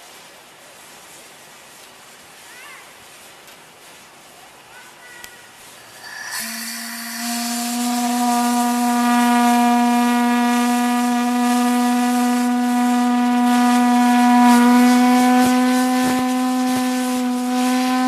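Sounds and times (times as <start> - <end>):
steam whistle blowing: 5.6 - 18.0.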